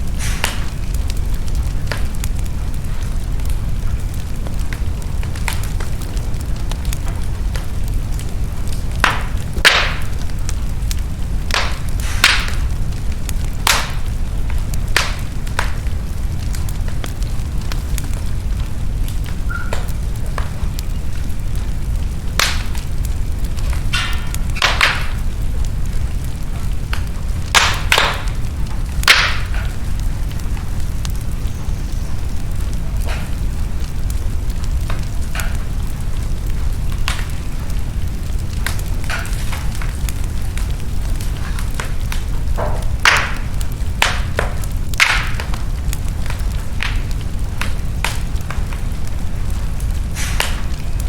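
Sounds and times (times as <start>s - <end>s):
sharp pops of fire: 0.0s - 51.0s
wood fire crackling: 0.0s - 51.0s
low rumble: 28.2s - 51.0s.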